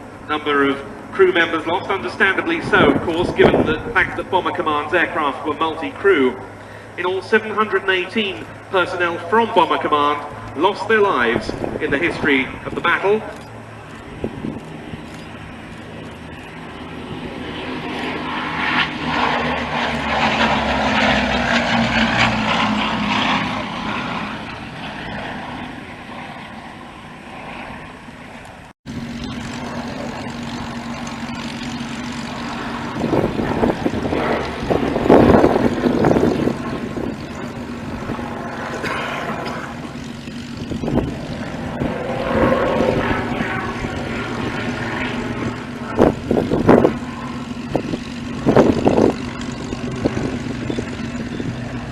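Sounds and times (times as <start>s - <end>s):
aircraft engine drone: 0.0s - 51.9s
propeller aircraft flying past: 0.0s - 51.9s.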